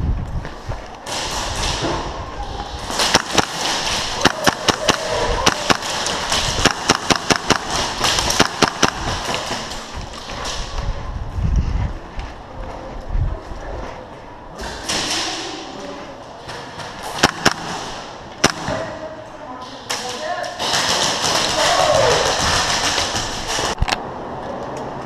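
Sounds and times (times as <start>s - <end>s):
airsoft guns firing: 2.8s - 10.6s, 16.4s - 19.0s, 19.9s - 23.8s.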